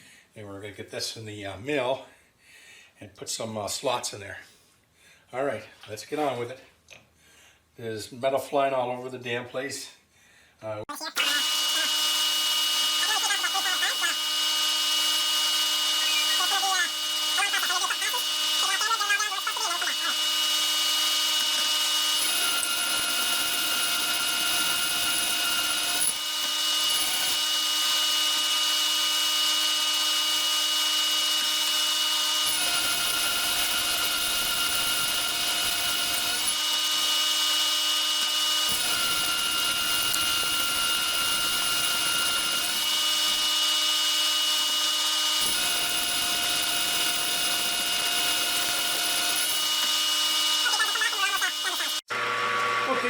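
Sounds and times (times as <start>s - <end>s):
metal lathe cutting steel: 11.2s - 53.0s.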